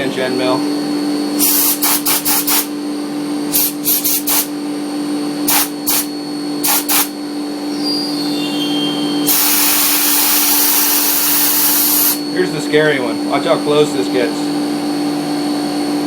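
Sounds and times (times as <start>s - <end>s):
mill spindle humming: 0.0s - 16.0s
compressed air hissing: 1.3s - 2.8s, 3.5s - 4.5s, 5.4s - 7.2s, 9.2s - 12.2s.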